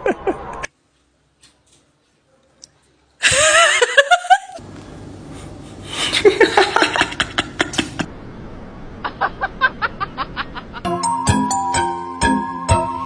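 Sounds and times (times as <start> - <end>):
person laughing: 0.0 - 0.7, 3.2 - 4.6, 5.9 - 8.1, 9.0 - 10.9.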